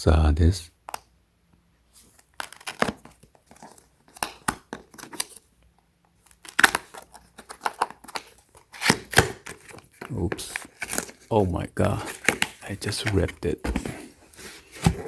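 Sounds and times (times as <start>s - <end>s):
packaging tearing and crinkling: 2.2s - 5.4s, 6.2s - 13.5s.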